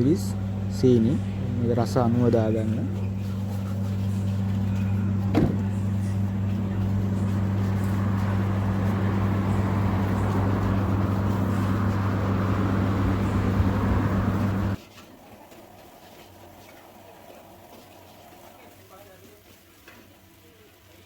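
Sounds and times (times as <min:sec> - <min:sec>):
loud low hum: 0:00.0 - 0:14.8
rice sizzling in a wok: 0:14.7 - 0:21.0.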